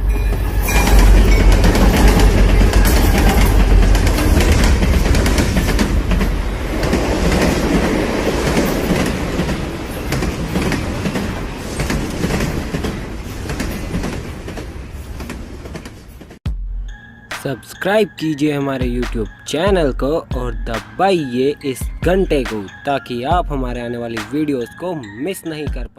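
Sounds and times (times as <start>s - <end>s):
train wheels clattering on rails: 0.0s - 16.4s.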